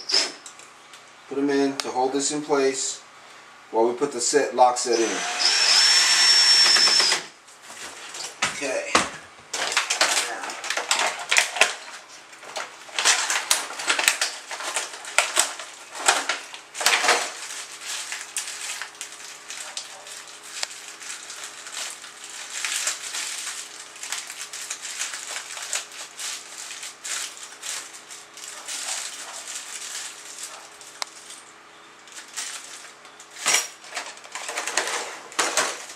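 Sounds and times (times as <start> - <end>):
packaging rustling: 9.6 - 35.9.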